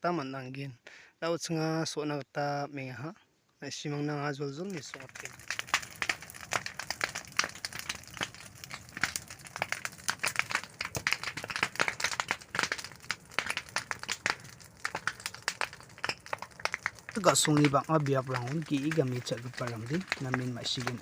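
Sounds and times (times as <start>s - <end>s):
dry vegetation burning crackling: 4.5s - 21.0s.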